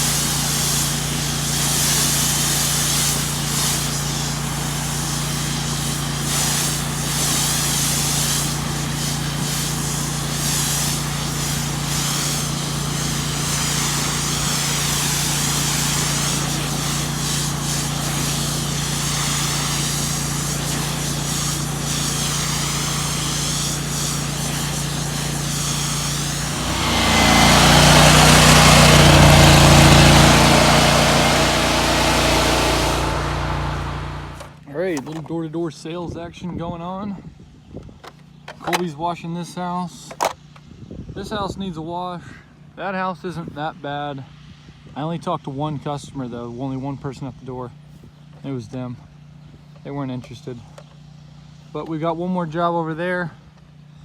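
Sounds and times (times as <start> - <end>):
high-pressure water spray hissing: 0.0 - 34.6
pressure washer engine running: 0.0 - 35.2.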